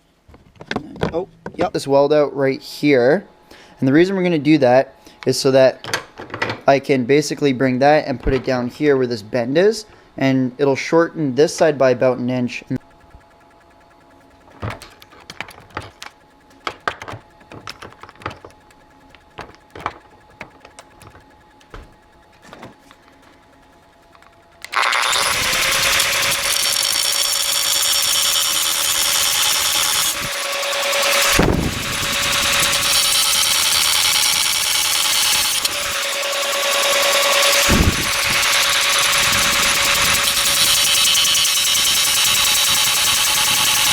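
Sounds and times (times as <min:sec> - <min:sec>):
power grinder whining: 0:12.8 - 0:43.9
metal parts clicking and knocking: 0:12.9 - 0:43.9.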